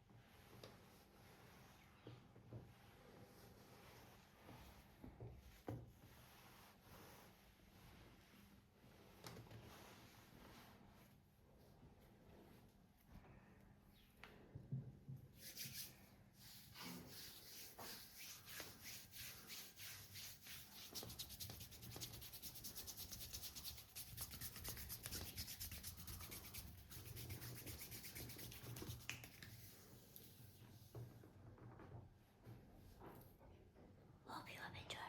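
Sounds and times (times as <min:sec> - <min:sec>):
rhythmic rubbing strokes of massage: 0:02.7 - 0:13.1, 0:15.4 - 0:30.0.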